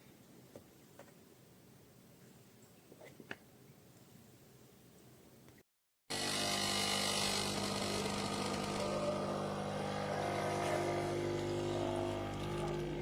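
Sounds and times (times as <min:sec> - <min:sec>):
coffee grinder motor running: 0:06.1 - 0:13.0.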